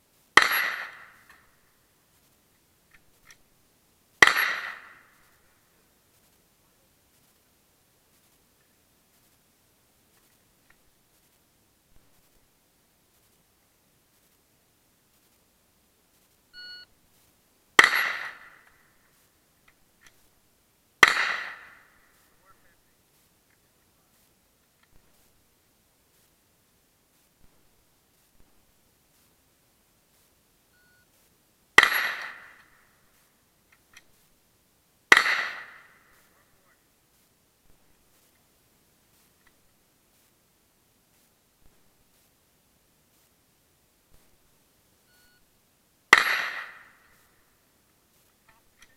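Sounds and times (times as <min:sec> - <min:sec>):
rifle shot: 0:00.4 - 0:01.5, 0:04.2 - 0:05.3, 0:17.8 - 0:18.8, 0:21.0 - 0:22.7, 0:31.8 - 0:32.7, 0:35.1 - 0:36.4, 0:46.1 - 0:47.2
short electronic beep: 0:16.6 - 0:16.9, 0:45.1 - 0:45.4.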